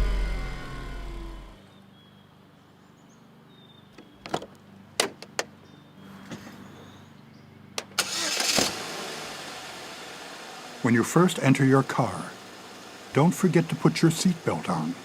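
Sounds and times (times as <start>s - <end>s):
short loud rushing sound: 0.0s - 1.6s.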